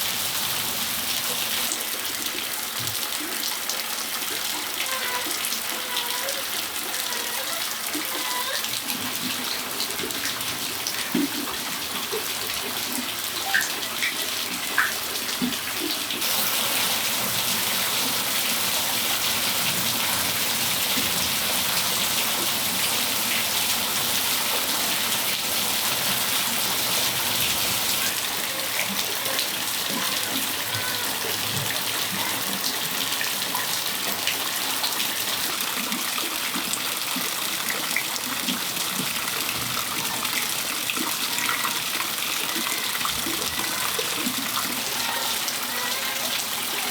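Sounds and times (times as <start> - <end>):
sharp water drips: 1.6 - 46.6
steady rain hiss: 16.2 - 32.3.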